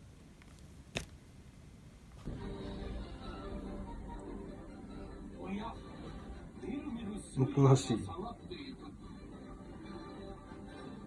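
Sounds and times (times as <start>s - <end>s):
background music: 2.3s - 11.0s.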